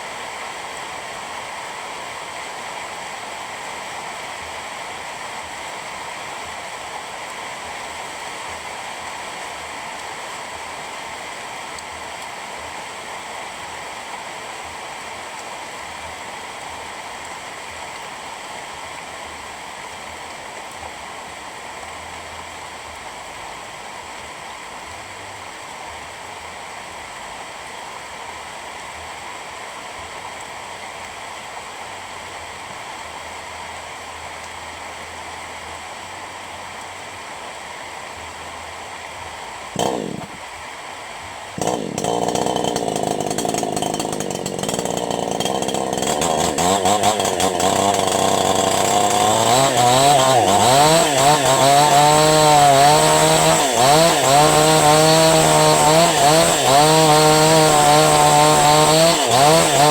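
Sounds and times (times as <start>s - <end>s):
chainsaw running and revving: 39.7s - 40.5s, 41.4s - 59.9s
chainsaw pull start: 39.8s - 40.5s, 41.4s - 59.9s.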